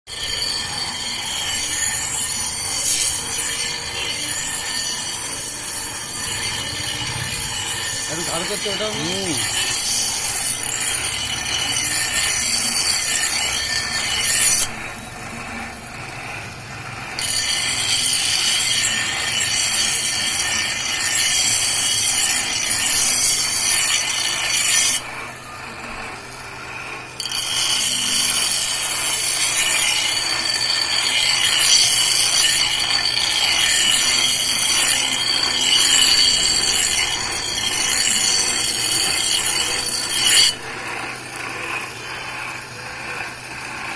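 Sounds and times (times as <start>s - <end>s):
blade grinding rasp: 0.1s - 43.9s.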